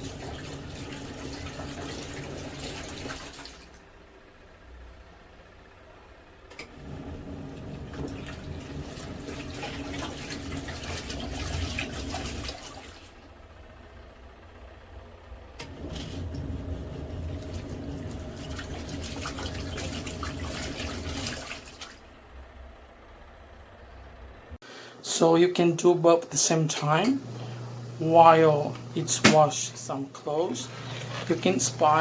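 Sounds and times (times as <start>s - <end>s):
water churning and sloshing: 0.0s - 3.9s, 6.8s - 13.8s, 15.6s - 22.4s, 26.9s - 32.0s
washing machine motor hum: 0.0s - 32.0s.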